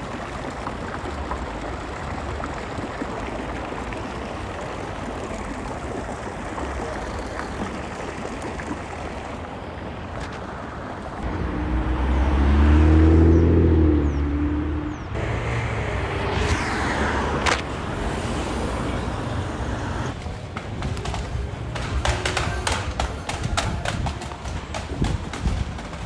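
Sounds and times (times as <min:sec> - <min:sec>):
street traffic noise: 0:00.0 - 0:26.0
vehicle engine humming: 0:10.9 - 0:24.8.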